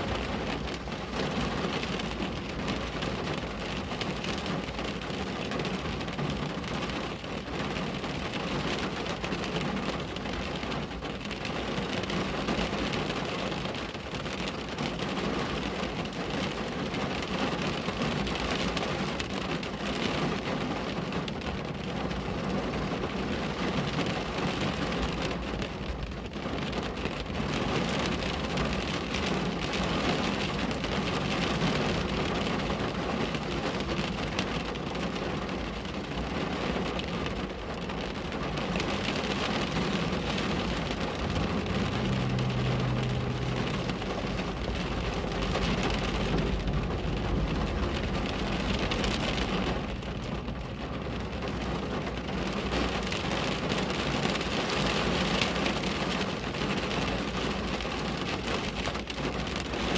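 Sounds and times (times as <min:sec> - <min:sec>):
rain falling on a window: 0:00.0 - 0:59.9
low rumble: 0:40.7 - 0:51.6.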